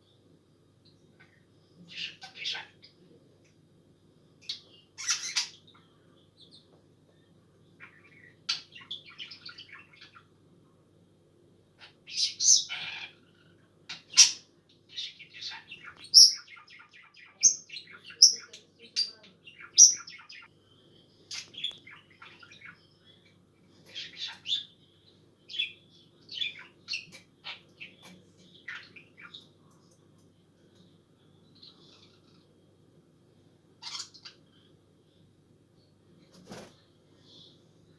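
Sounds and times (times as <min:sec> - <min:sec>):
budgerigar chirping and chattering: 0:01.9 - 0:02.8, 0:04.4 - 0:05.8, 0:11.8 - 0:20.5, 0:23.9 - 0:24.7, 0:33.8 - 0:34.4.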